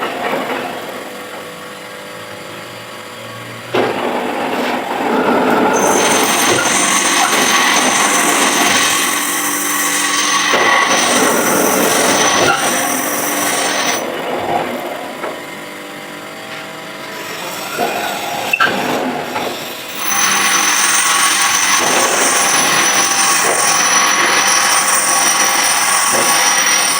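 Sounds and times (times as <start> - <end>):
lathe high whine: 5.0 - 18.2, 19.8 - 26.9
lathe cutting scraping noise: 5.2 - 14.2, 19.9 - 26.9.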